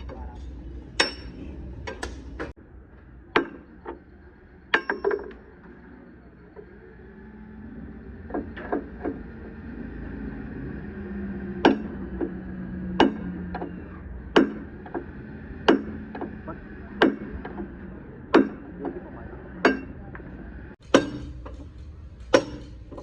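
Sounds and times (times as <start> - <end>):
hammer striking metal: 0.0 - 2.5, 3.3 - 5.6, 11.5 - 23.0
steady low hum: 0.0 - 23.0.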